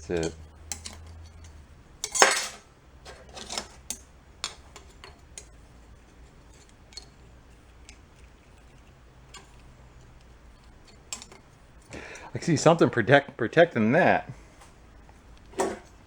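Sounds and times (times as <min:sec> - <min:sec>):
metal parts clinking: 0:00.0 - 0:12.2
fan humming: 0:00.0 - 0:16.0.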